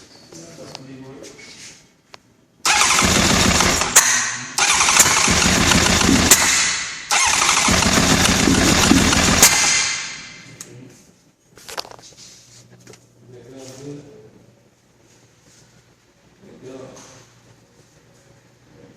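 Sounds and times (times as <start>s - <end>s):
motorcycle electric starter cranking: 2.7s - 10.3s.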